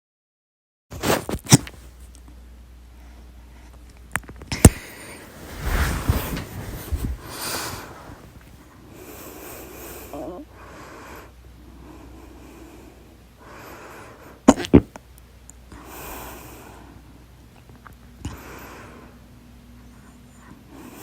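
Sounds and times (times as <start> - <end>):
noisy breaths: 2.8 - 3.9, 4.5 - 14.5, 15.6 - 17.5, 18.2 - 21.0
loud sharp hiccup: 14.5 - 15.0.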